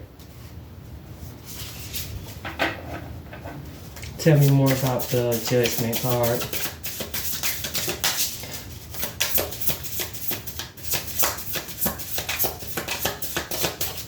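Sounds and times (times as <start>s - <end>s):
cards being shuffled by hand: 4.4s - 14.0s.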